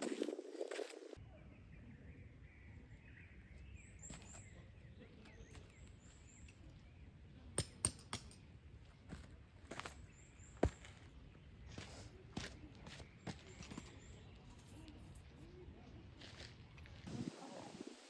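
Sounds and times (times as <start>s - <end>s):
faint birdsong: 0.9s - 17.0s.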